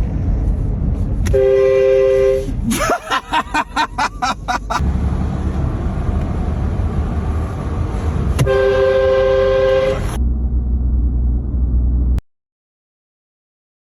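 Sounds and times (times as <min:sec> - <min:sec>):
car road and engine rumble: 0:00.0 - 0:12.2
train horn blast: 0:01.3 - 0:02.6, 0:08.4 - 0:10.2.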